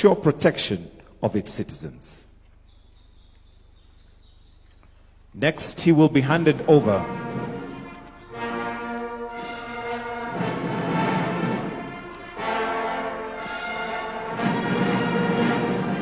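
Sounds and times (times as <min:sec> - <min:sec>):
brass band playing slow tune: 0:06.4 - 0:16.0.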